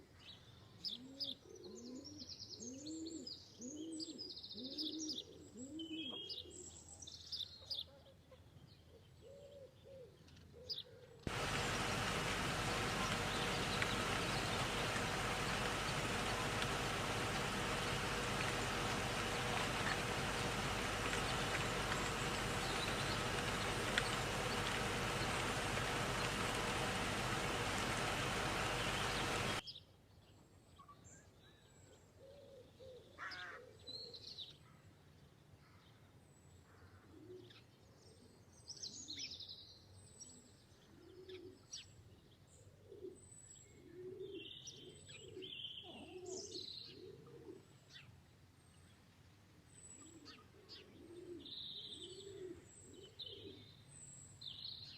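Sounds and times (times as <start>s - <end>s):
loud steady noise with hum: 11.3s - 29.6s
pigeons cooing: 11.3s - 29.6s
small birds chirping: 11.3s - 29.6s.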